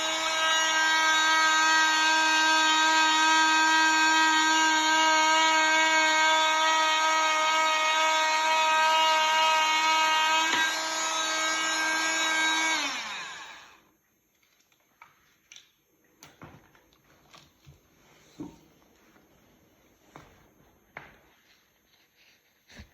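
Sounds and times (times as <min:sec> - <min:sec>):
power tool whining: 0:00.0 - 0:13.8.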